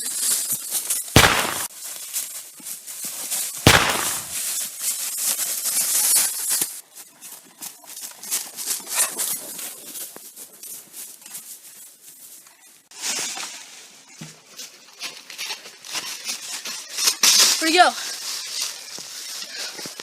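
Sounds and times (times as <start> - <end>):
rustling and crackling: 1.2 - 1.7, 3.7 - 4.4.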